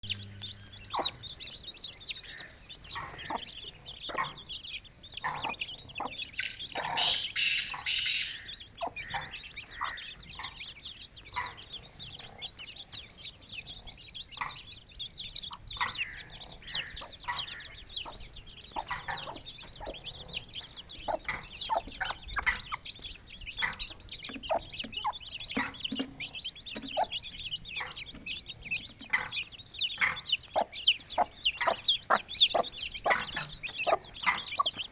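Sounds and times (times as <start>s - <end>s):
chicks peeping: 0.0s - 34.9s
hen clucking: 0.0s - 34.9s.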